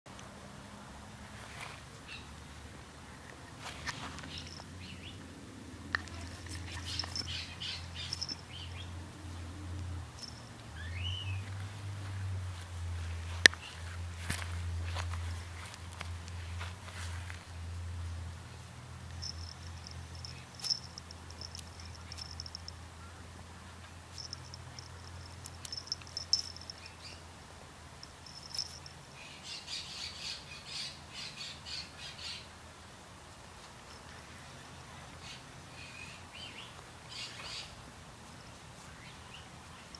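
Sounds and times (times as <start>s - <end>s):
low steady hum: 0.1s - 30.6s
birds chirping: 1.9s - 2.6s, 3.3s - 11.9s, 35.1s - 37.8s
small birds chirping: 1.9s - 2.6s, 3.3s - 5.3s, 5.9s - 9.5s, 10.1s - 11.8s, 18.2s - 27.3s, 28.0s - 32.5s, 35.1s - 37.8s.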